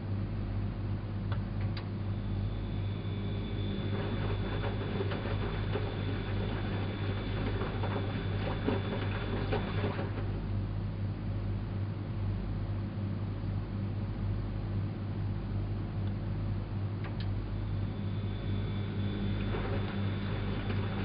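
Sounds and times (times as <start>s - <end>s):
washing machine motor hum: 0.0s - 21.0s
high whine: 0.9s - 10.6s, 16.4s - 21.0s
ticking and pattering inside machine: 1.2s - 10.6s, 16.0s - 21.0s.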